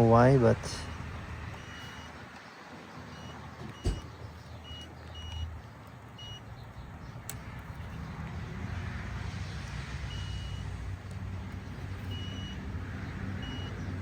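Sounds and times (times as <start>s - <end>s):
circuit tester beeps: 0.9s - 2.2s, 3.1s - 5.6s, 6.2s - 6.4s, 12.0s - 12.6s, 13.4s - 13.8s.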